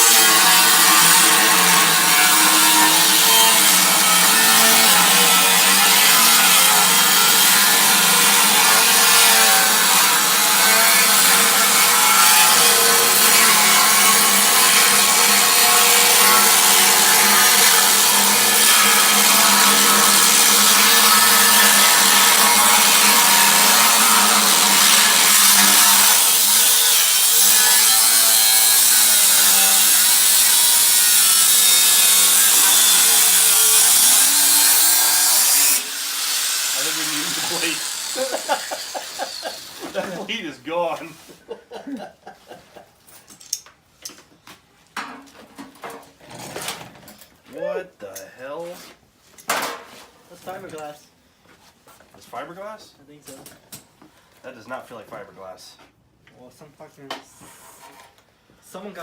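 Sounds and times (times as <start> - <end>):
power tool cutting steel: 0.0 - 40.6.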